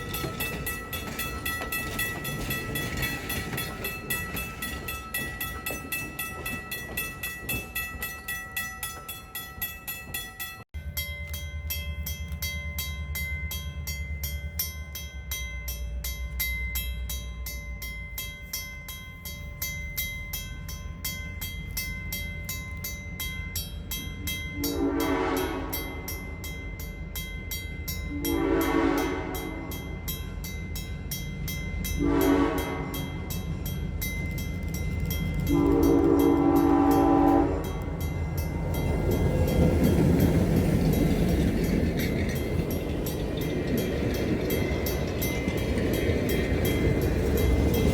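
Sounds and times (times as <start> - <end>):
diesel locomotive engine rumbling: 0.0 - 47.9
train horn blasts: 24.6 - 26.1, 28.1 - 29.8, 32.0 - 33.1, 35.5 - 38.0.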